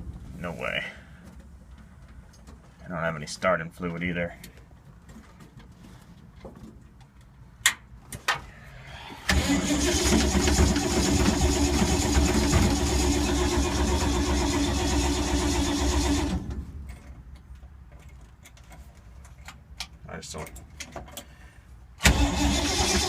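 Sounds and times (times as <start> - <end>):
starter cranking car engine: 8.8 - 16.5, 22.0 - 23.0.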